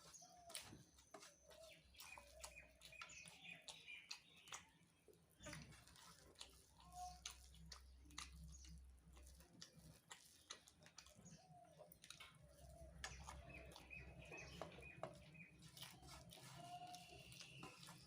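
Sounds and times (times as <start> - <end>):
bird chirps: 0.0 - 5.8, 11.0 - 18.0
crunching of puffed rice eating: 0.0 - 18.0.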